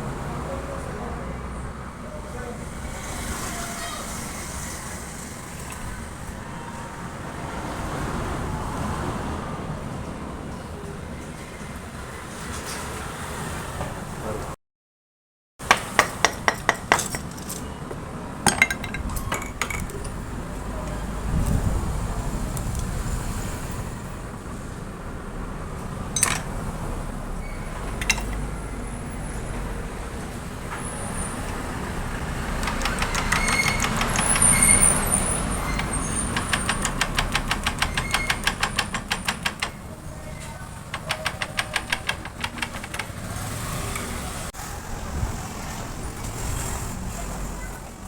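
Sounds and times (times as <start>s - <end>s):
sharp metal clicks: 32.4s - 39.9s, 40.9s - 44.2s
ratchet wrench clicking: 32.5s - 39.8s, 40.9s - 44.1s.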